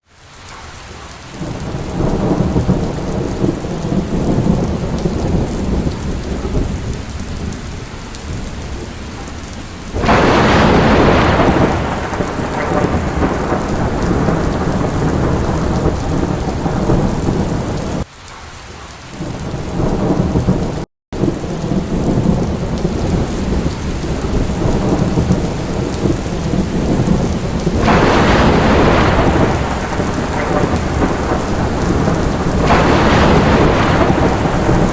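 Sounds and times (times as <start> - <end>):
steady rain: 0.0 - 34.9
loud thunderclaps: 1.3 - 18.1, 19.2 - 34.9
rolling thunder: 1.3 - 18.1, 19.2 - 34.9.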